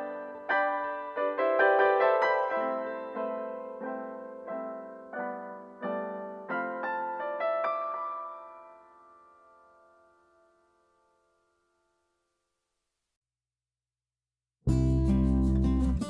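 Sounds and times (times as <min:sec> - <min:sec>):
gentle piano chords: 0:00.0 - 0:11.5.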